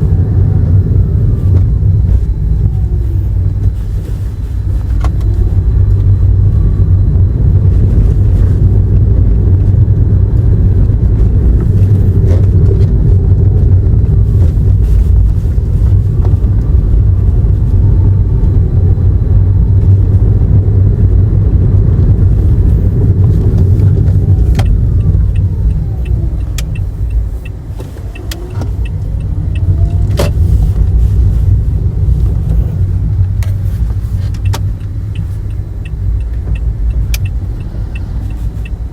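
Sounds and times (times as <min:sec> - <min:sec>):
road and tyre rumble: 0:00.0 - 0:38.9
faint regular ticking: 0:23.4 - 0:30.5, 0:33.1 - 0:38.9.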